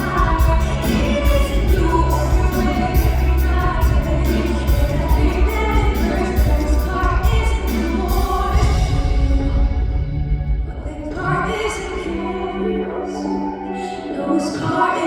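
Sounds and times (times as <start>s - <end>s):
steady drum beat: 0.0s - 9.8s
band track with heavy bass: 0.0s - 10.4s
woman singing: 0.0s - 15.0s.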